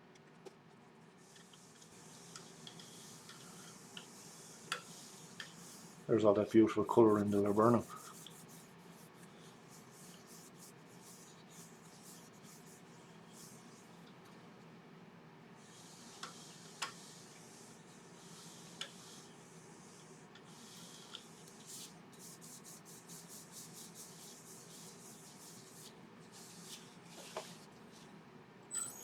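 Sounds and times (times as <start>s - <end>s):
sanding swishes: 1.8s - 13.9s.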